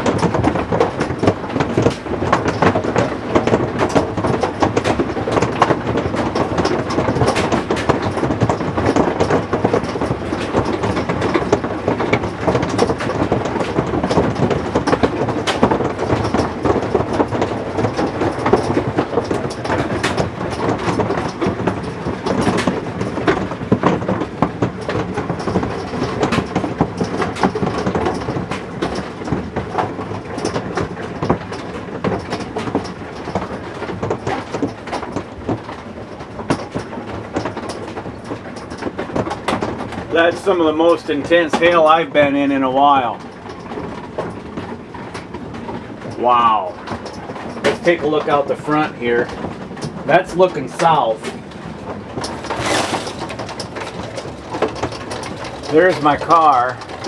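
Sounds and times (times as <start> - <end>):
man talking: 40.1 - 43.2, 46.2 - 46.8, 47.7 - 49.3, 50.1 - 51.3, 55.7 - 56.8
heavy hail pounding: 45.5 - 57.0.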